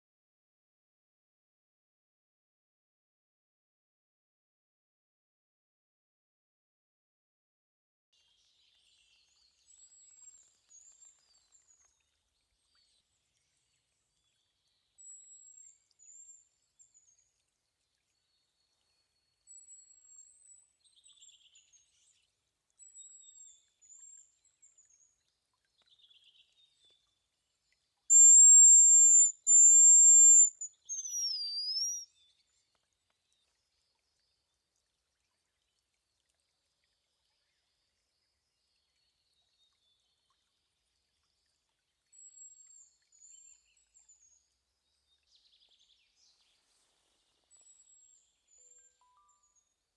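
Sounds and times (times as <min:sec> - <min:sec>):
grouse whistling high song: 0:28.1 - 0:32.0.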